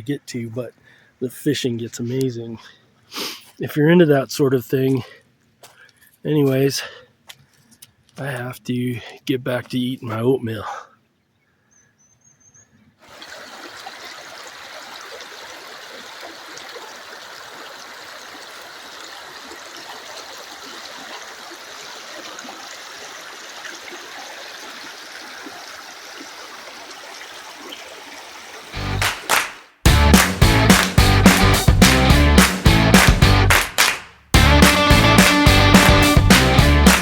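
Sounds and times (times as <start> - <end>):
mountain creek running: 13.0 - 33.6.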